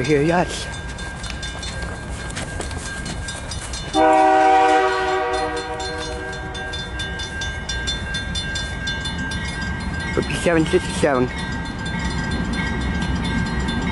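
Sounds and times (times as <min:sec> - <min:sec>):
low train rumble: 0:00.0 - 0:13.9
locomotive horn blast: 0:04.0 - 0:06.9.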